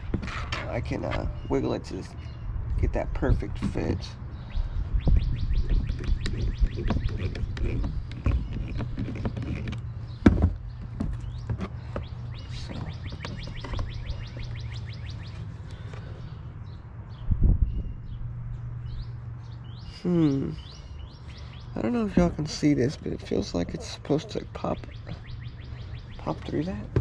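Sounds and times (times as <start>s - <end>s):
bird trilling high chirps: 12.0s - 15.9s.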